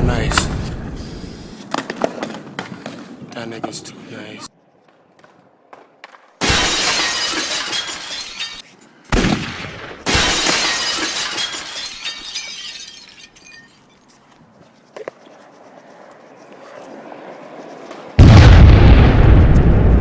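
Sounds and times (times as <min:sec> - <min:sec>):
glass shattering: 0:06.4 - 0:08.6, 0:10.1 - 0:13.9.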